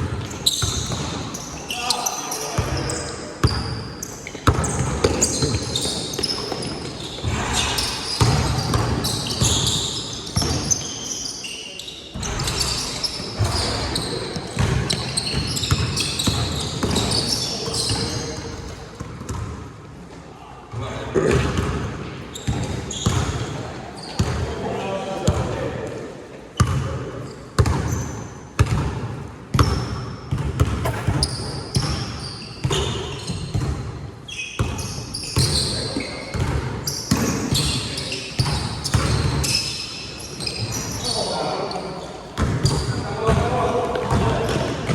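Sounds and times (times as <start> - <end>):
basketball bouncing on court: 0.0 - 1.4, 2.6 - 10.9, 12.1 - 19.6, 21.2 - 23.6, 24.2 - 24.5, 26.6 - 27.0, 27.6 - 34.0, 34.6 - 39.7, 42.4 - 44.9
sneakers squeaking: 0.0 - 19.6, 21.2 - 25.6, 26.6 - 44.9.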